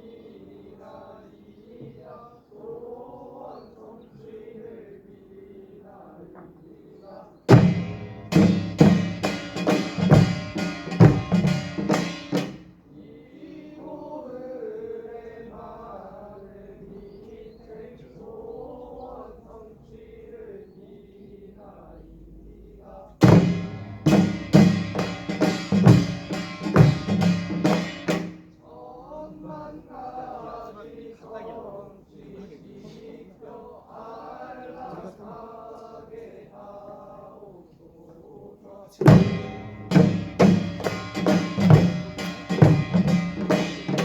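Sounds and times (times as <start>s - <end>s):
sharp ringing percussion hits: 7.5s - 12.7s, 23.2s - 28.5s, 39.1s - 44.0s
drums beating: 7.5s - 12.8s, 23.2s - 28.6s, 39.0s - 44.0s
metal gongs ringing: 39.2s - 44.0s.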